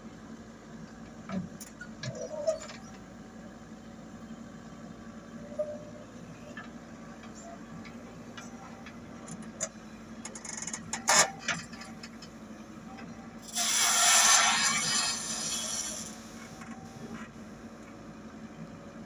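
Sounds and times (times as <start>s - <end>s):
backhoe diesel engine running: 0.0s - 19.0s.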